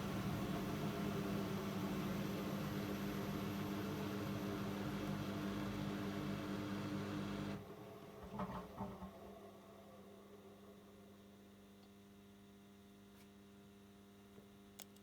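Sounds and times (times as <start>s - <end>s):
washing machine humming: 0.0s - 10.8s
faint electrical hum: 0.0s - 15.0s.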